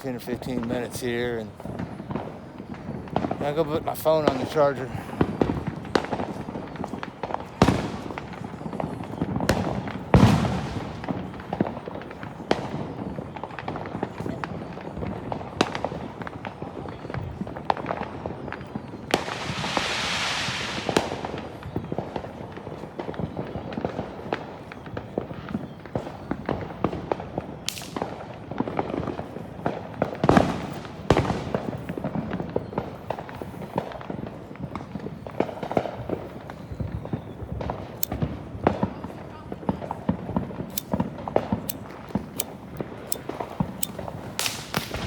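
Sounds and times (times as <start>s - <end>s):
fireworks popping and banging: 0.0s - 45.0s
firework hissing burst: 19.1s - 21.8s, 41.7s - 45.0s.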